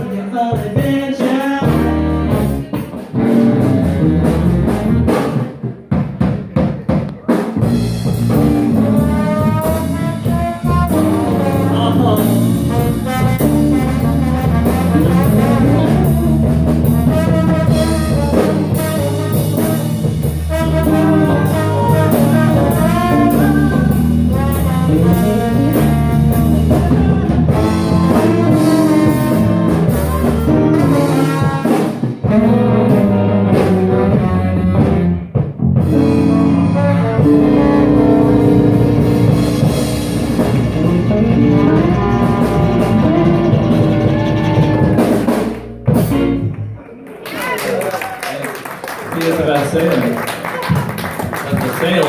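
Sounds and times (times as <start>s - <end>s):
live band playing instrumental: 0.0s - 48.0s, 48.6s - 52.0s
horns: 7.6s - 46.6s.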